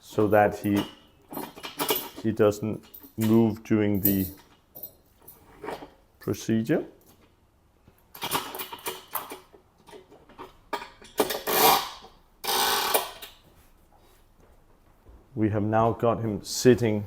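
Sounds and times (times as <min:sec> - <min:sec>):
table fittings clicking and rattling: 0:00.6 - 0:03.4, 0:08.2 - 0:11.7.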